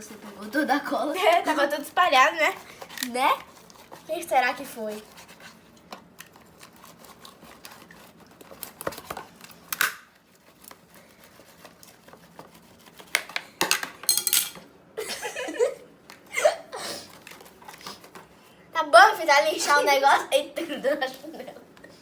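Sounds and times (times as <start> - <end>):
slime rustling: 0.0 - 13.1.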